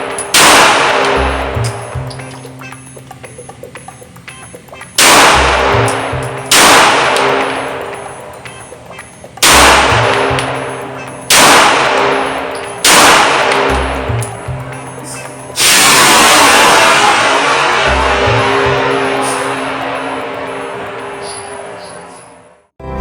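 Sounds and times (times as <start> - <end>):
pistol shots echoing: 0.0 - 1.5, 5.0 - 8.6, 9.4 - 14.0.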